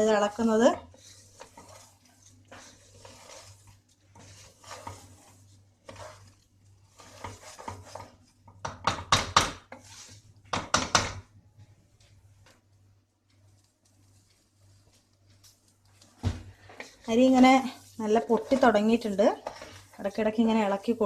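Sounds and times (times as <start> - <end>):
wooden spoon scraping a pot: 0.0 - 11.3, 13.3 - 21.0
spoon knocking against pot: 8.5 - 9.7, 10.5 - 11.3.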